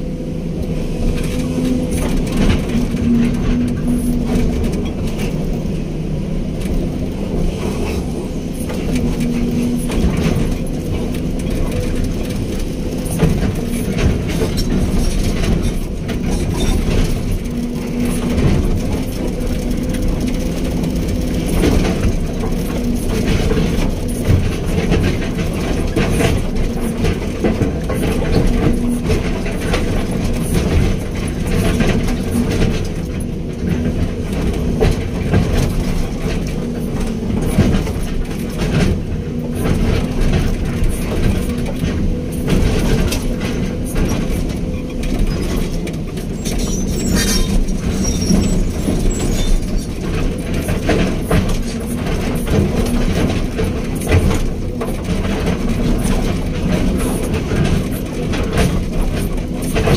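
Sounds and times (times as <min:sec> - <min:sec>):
excavator diesel engine running: 0:00.0 - 0:59.9
metallic clanks and rattles: 0:08.6 - 0:59.9.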